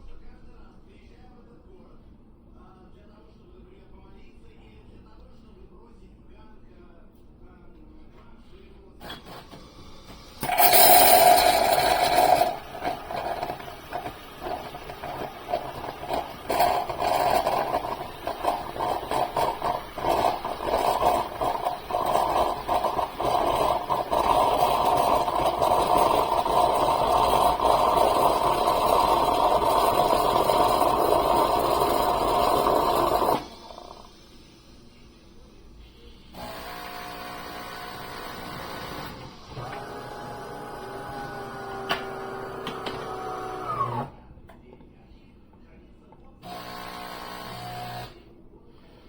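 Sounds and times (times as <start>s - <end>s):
espresso machine humming: 9.0s - 34.2s, 36.3s - 44.2s, 46.4s - 48.2s.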